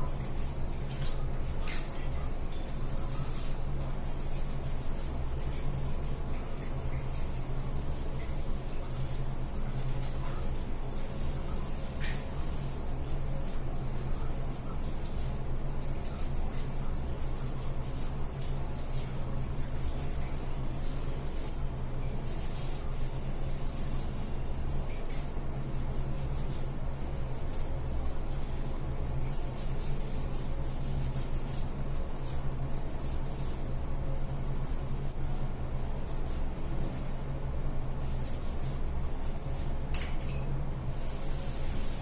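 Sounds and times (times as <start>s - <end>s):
steady low hum: 0.0s - 42.0s
hair being rubbed: 22.2s - 40.2s, 40.9s - 42.0s.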